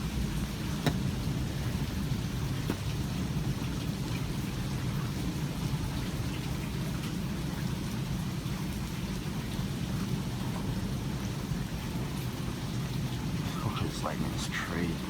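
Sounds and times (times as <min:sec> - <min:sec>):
steady rain: 0:00.0 - 0:15.0.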